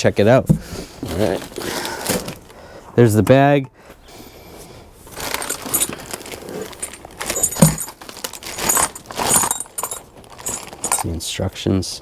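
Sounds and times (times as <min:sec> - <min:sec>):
packing rustling and rattling: 0:05.0 - 0:11.2.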